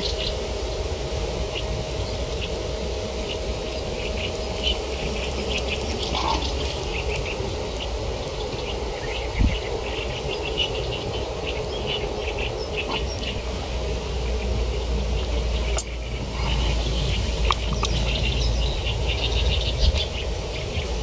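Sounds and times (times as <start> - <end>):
steady low rumble: 0.0 - 21.0
small animals chirping: 4.0 - 13.6.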